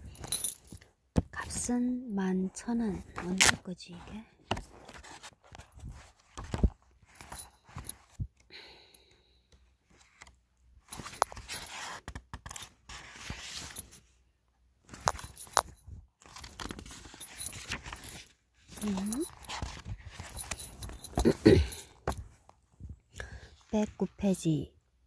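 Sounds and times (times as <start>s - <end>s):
book pages rustling: 2.9s - 8.2s, 9.8s - 14.1s, 14.8s - 22.6s.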